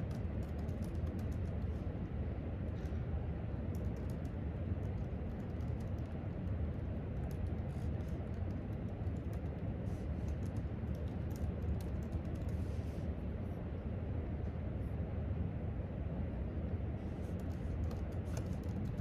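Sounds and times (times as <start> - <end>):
laptop keyboard typing: 0.0 - 1.8, 3.7 - 12.7, 17.4 - 19.0
low room rumble: 0.0 - 19.0.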